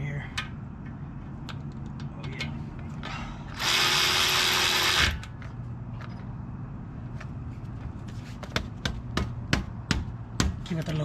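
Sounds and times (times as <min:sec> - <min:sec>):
power tool spinning bolt: 0:03.5 - 0:05.4.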